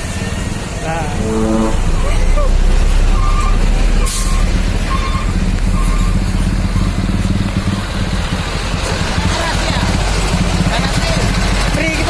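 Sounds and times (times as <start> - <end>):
diesel truck engine running: 0.0 - 12.0.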